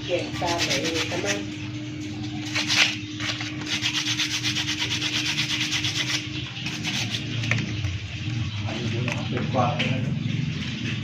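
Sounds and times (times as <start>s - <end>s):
rapid metal scraping: 0.1s - 1.6s, 2.4s - 7.6s.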